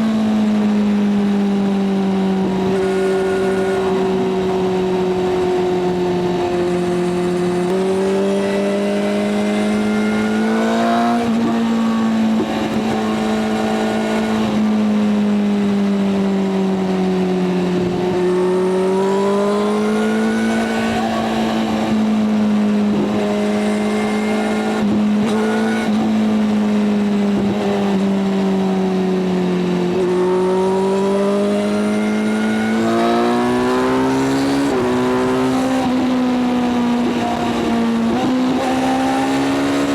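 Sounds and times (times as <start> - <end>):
motorcycle engine at speed: 0.0 - 39.9.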